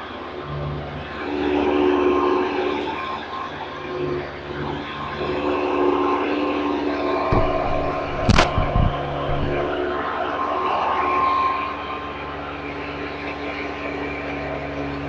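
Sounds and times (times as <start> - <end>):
sharp knocks: 7.3 - 10.0.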